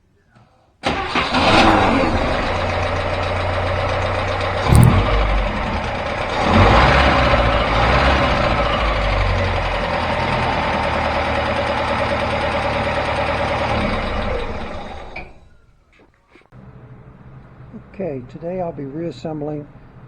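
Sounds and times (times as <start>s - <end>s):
vehicle engine idling: 2.6s - 15.2s
loud thump: 4.7s - 6.8s.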